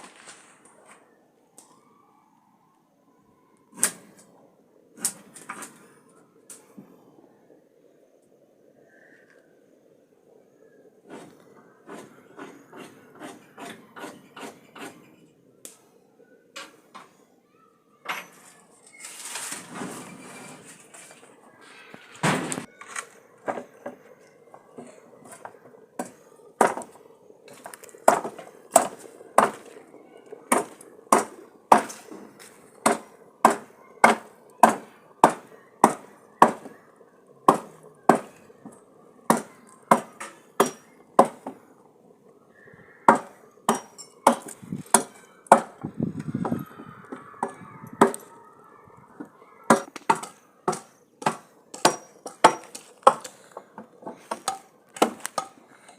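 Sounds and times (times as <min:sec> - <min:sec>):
chopping strokes: 0:32.8 - 0:36.7, 0:37.5 - 0:38.3.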